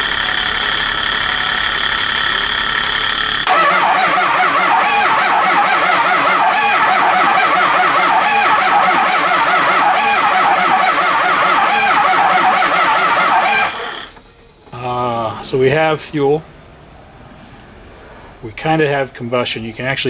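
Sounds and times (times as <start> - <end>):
diesel engine cranking on starter: 0.0 - 15.6.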